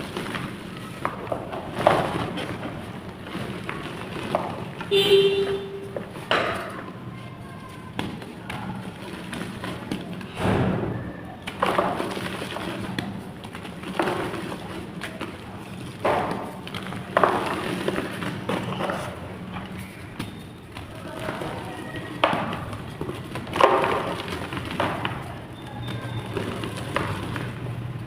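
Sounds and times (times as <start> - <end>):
clay blocks crunching: 11.4 - 25.6.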